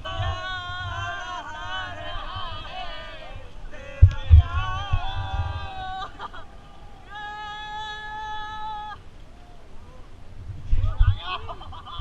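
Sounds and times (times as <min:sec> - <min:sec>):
voices singing together: 0:00.0 - 0:09.0
low thumps on microphone: 0:03.9 - 0:05.5.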